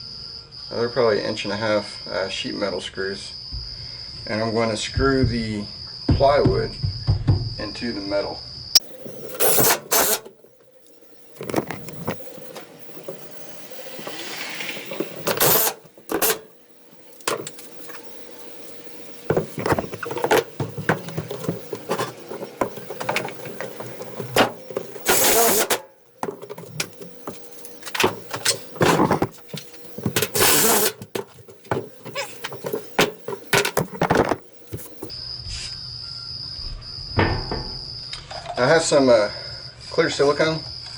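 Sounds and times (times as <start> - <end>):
cordless drill driving screws: 9.3 - 10.3, 15.1 - 16.5, 24.8 - 25.8, 30.2 - 31.0
knocks and clatter of handling: 11.4 - 13.4, 19.3 - 35.1.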